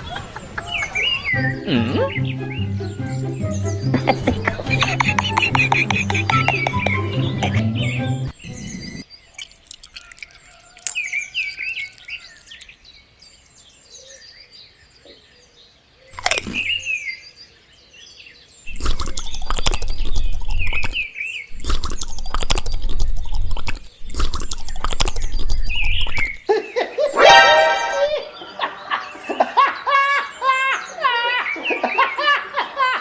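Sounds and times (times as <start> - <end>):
birds chirping: 0.0 - 32.7
whistle-like sweep: 27.1 - 28.5.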